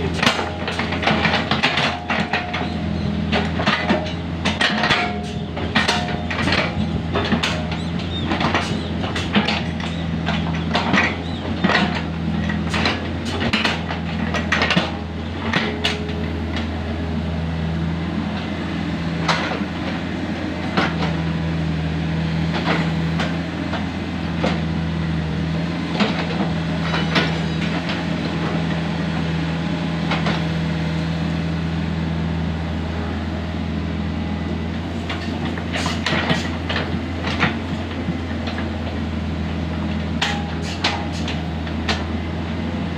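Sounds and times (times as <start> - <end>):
excavator diesel engine running: 0.0 - 42.9
metallic clanks from bucket: 35.1 - 37.6, 40.2 - 42.0.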